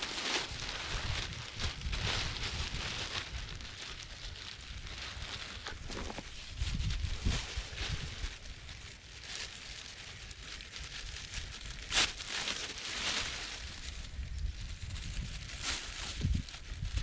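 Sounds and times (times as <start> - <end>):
dry leaves and twigs rustling: 0.0 - 17.0
wind buffeting microphone: 0.5 - 8.8, 13.9 - 17.0.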